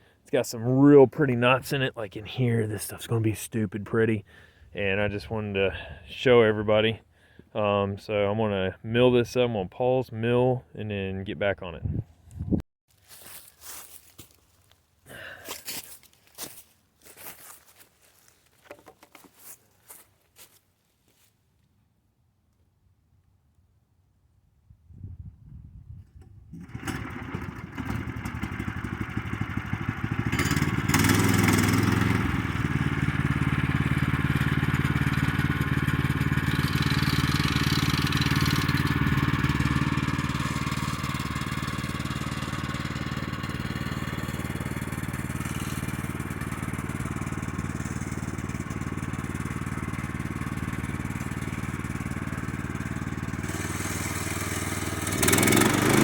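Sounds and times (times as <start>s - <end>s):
sawmill engine running: 26.6s - 56.0s.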